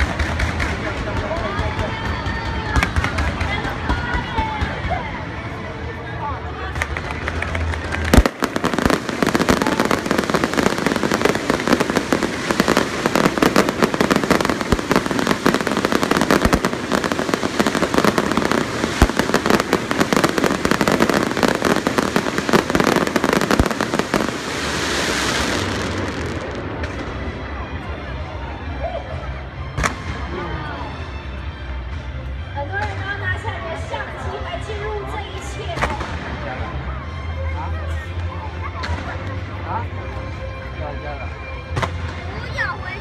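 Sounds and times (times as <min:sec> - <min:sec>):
fireworks crackling: 0:00.0 - 0:05.3, 0:06.6 - 0:27.9.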